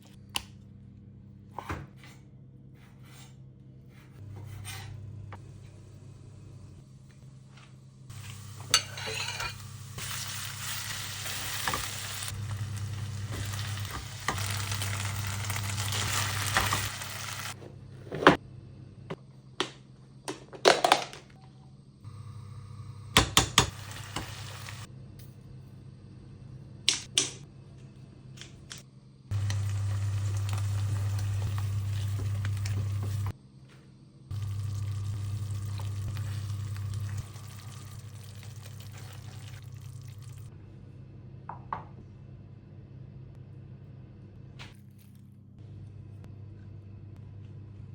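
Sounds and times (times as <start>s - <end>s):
steady low hum: 0.0s - 20.4s, 21.3s - 47.9s
food sizzling in a frying pan: 8.1s - 17.6s, 23.6s - 24.9s, 29.3s - 33.3s, 34.3s - 40.5s.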